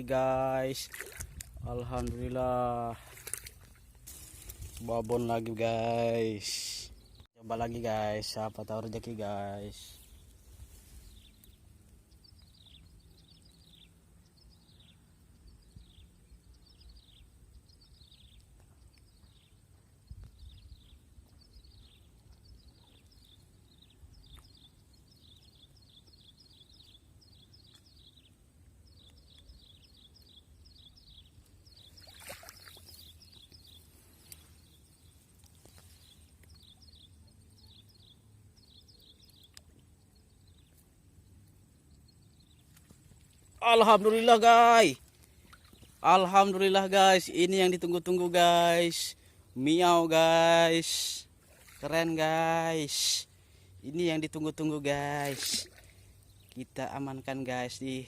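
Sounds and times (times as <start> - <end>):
bird chirping: 10.0 - 50.0.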